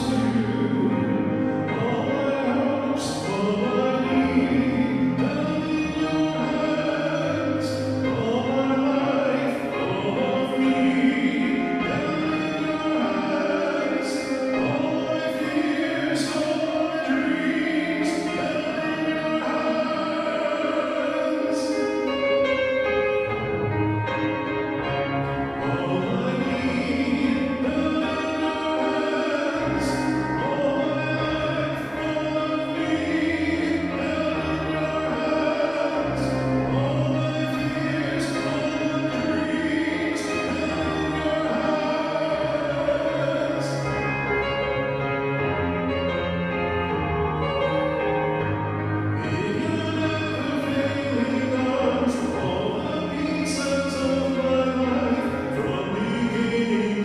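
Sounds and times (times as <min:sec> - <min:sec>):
person singing worship song: 0:00.0 - 0:22.8, 0:23.6 - 0:46.4, 0:47.0 - 0:57.0
instrumental accompaniment: 0:00.0 - 0:57.0.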